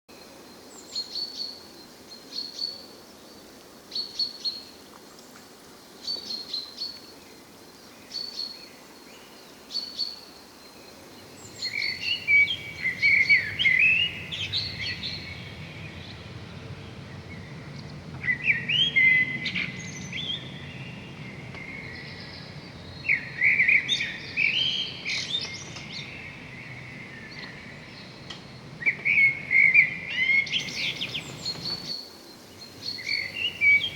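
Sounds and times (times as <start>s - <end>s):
seabirds calling: 11.2s - 15.7s, 30.6s - 33.9s
low background rush: 30.6s - 33.9s.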